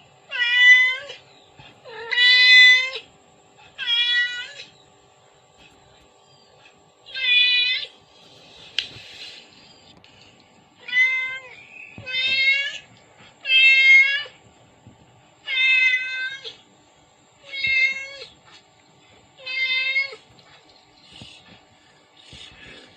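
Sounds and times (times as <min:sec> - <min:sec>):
cat meowing: 0:10.8 - 0:12.9, 0:13.5 - 0:14.4, 0:15.5 - 0:16.6, 0:19.4 - 0:20.2.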